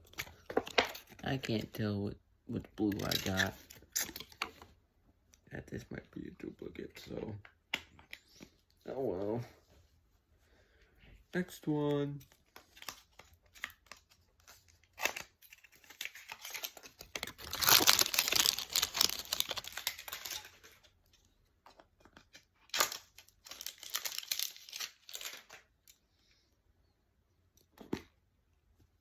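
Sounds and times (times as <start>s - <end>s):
wrapper tearing: 2.9s - 4.3s, 12.7s - 20.8s, 22.6s - 25.7s
wrapper crinkling: 12.7s - 20.9s, 22.7s - 25.7s.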